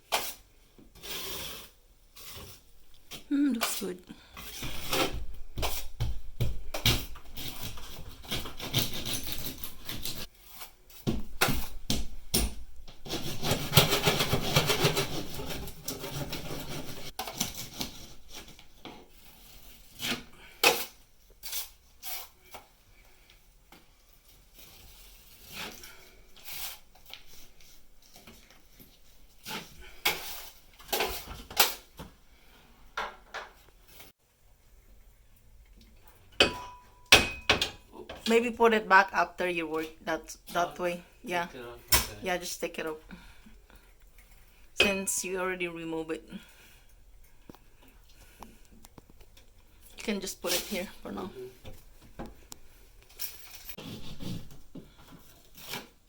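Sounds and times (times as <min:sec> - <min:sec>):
scraping and rubbing: 0:00.0 - 0:11.8, 0:12.8 - 0:22.5, 0:24.1 - 0:32.6, 0:46.6 - 0:56.0.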